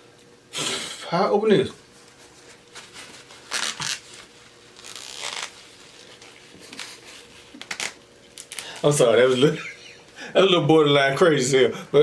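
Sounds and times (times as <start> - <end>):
package crinkling and tearing: 3.1 - 8.9.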